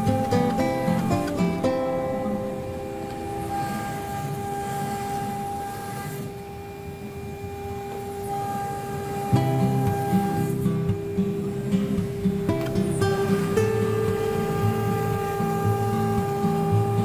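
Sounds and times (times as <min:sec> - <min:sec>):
cutting noise hiss: 0:00.0 - 0:17.0
router spindle whine: 0:00.0 - 0:17.0.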